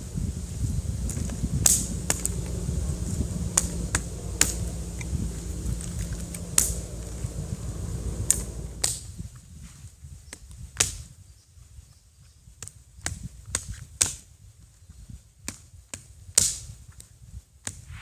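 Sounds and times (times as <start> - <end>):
low steady rumble: 0.0 - 9.0
wood fire crackling and popping: 0.0 - 9.0.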